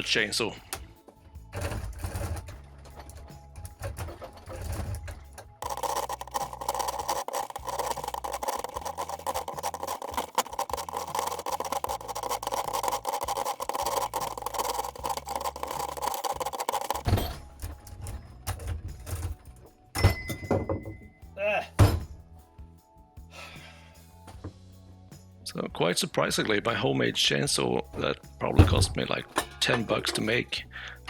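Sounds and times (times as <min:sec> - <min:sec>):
background music: 0:00.0 - 0:31.0.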